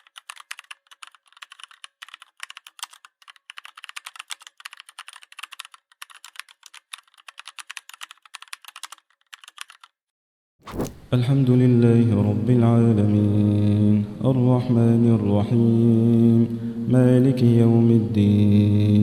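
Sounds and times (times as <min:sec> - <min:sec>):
rapid irregular clicking: 0:00.0 - 0:10.0.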